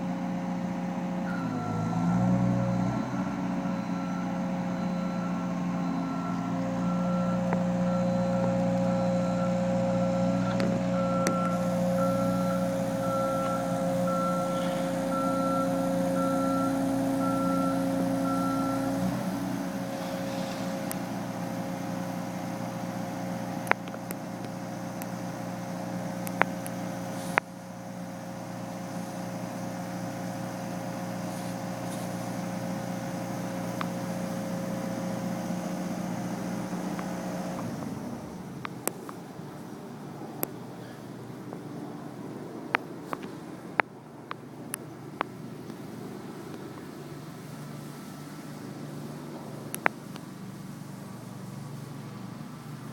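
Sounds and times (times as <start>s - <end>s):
heavy machine engine running: 0.0s - 39.1s
reversing alarm beeping: 1.0s - 23.4s.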